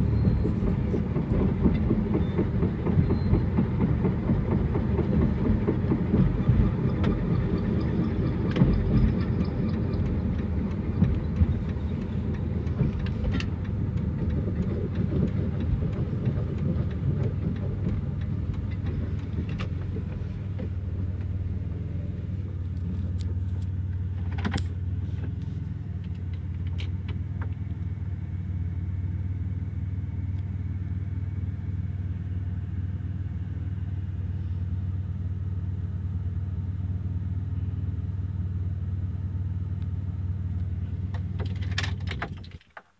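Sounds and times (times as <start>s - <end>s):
engine knocking and clatter: 0.0s - 42.6s
van engine rumbling: 0.0s - 42.9s.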